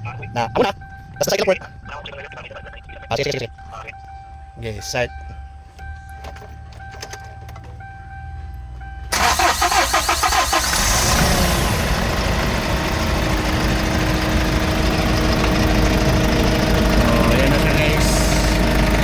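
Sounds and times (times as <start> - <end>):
diesel engine running: 0.0 - 19.0
starter cranking diesel engine: 9.1 - 19.0.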